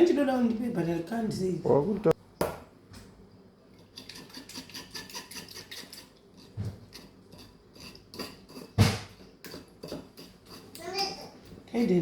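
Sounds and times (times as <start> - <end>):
utensils tapping against dishes: 3.8 - 10.9.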